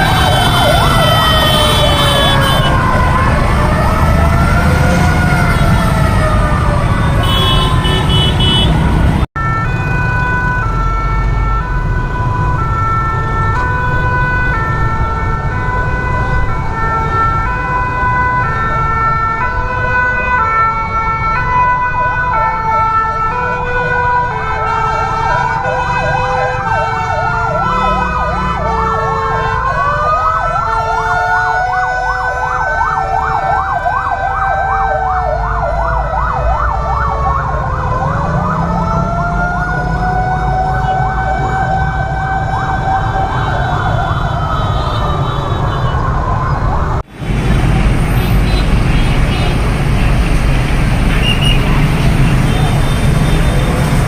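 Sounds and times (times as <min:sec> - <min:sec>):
siren gliding down in pitch: 0:00.0 - 0:07.8, 0:09.4 - 0:47.0
fast warbling siren: 0:00.0 - 0:08.6, 0:09.4 - 0:47.0
fire engine sirens wailing: 0:00.0 - 0:54.0
low rumble of vehicle engines: 0:00.0 - 0:54.0
two-note hi-lo siren: 0:24.8 - 0:46.7.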